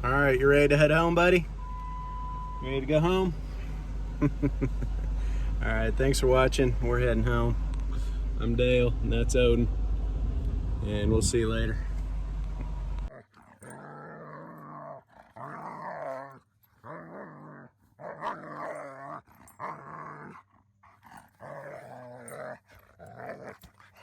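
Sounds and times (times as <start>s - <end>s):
vehicle noise: 0.0s - 13.1s
dog moaning: 13.1s - 24.0s.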